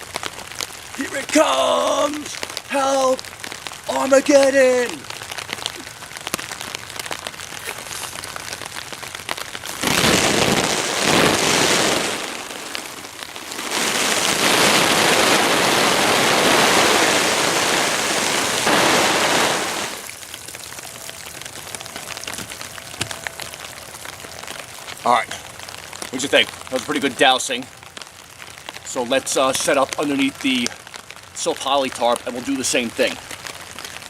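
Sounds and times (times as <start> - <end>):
light rain patter: 0.0 - 34.0
hose spray beating on tarp: 9.6 - 20.4.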